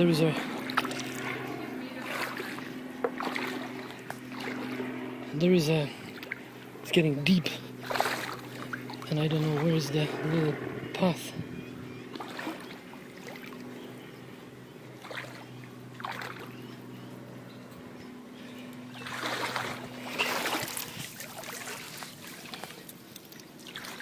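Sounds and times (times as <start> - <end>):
wading through water splashing: 0.0 - 6.8, 7.5 - 10.8, 12.0 - 14.0, 14.9 - 16.7, 18.7 - 24.0.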